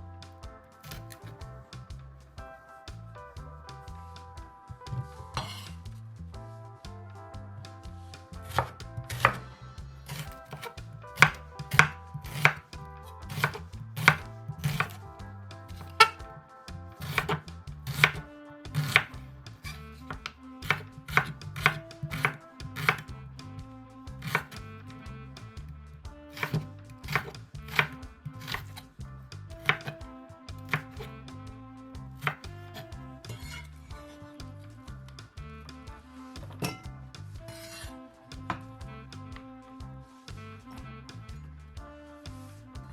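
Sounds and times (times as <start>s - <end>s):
knife chopping on cutting board: 0.9s - 1.3s, 8.4s - 9.4s, 10.1s - 12.7s, 13.3s - 15.0s, 16.9s - 18.2s, 18.8s - 19.2s, 20.1s - 23.1s, 24.2s - 24.6s, 26.4s - 28.8s, 29.6s - 30.0s, 30.6s - 31.1s, 32.2s - 33.7s.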